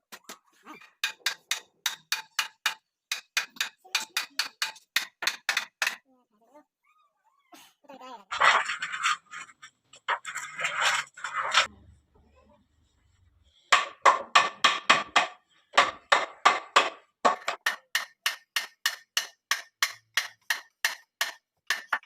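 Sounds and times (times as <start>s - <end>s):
hammer striking wood: 1.0s - 6.0s, 13.7s - 22.0s.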